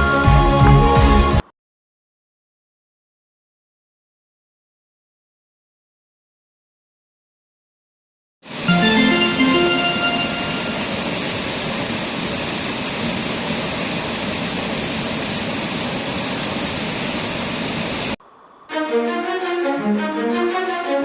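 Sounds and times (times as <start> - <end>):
background music: 8.7 - 11.2.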